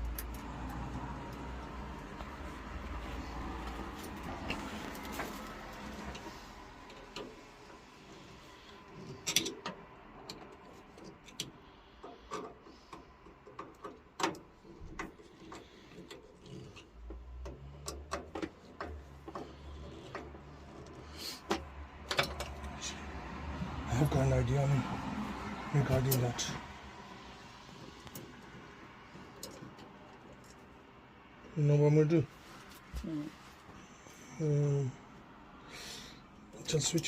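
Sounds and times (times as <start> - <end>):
metal parts clicking and tapping: 9.0 - 22.8.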